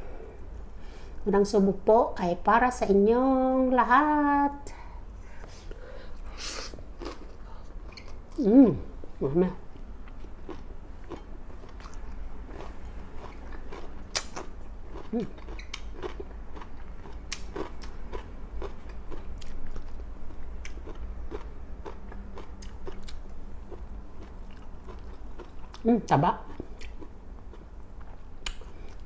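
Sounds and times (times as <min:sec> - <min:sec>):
chewing and biting food: 0:07.0 - 0:08.2, 0:09.7 - 0:25.8, 0:26.4 - 0:29.0.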